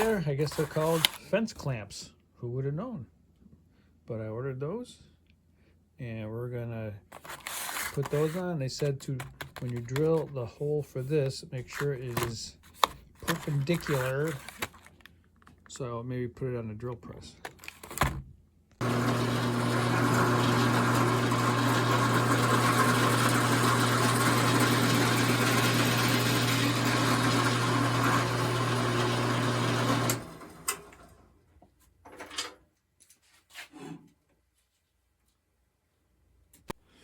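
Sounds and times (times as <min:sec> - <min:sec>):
drill press motor humming: 0:18.8 - 0:31.2.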